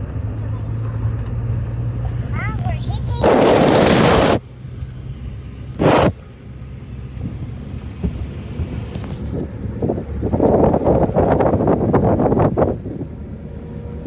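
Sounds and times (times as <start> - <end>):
low outdoor rumble: 0.0 - 14.0
wind on microphone: 3.0 - 4.4, 5.7 - 6.2, 7.2 - 13.6.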